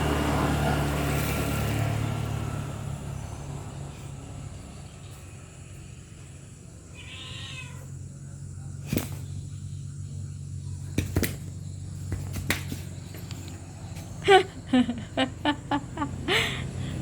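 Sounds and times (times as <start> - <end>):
cat meowing: 6.9 - 8.0
steady low hum: 7.8 - 17.0.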